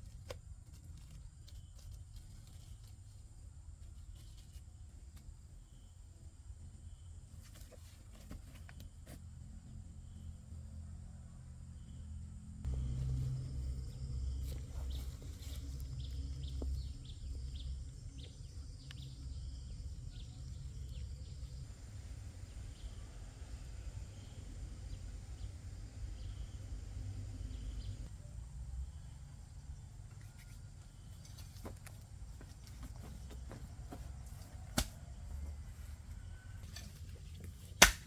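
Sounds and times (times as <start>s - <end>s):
steady low rumble: 12.6s - 29.9s.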